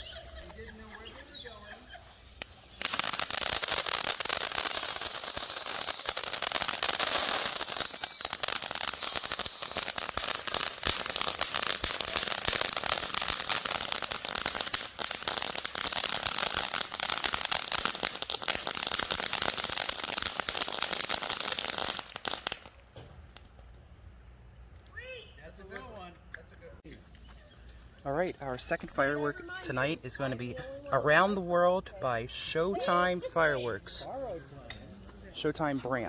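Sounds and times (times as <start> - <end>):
firework fountain crackling: 0.0 - 23.9, 31.1 - 34.0
high falling firework squeals: 1.4 - 22.6.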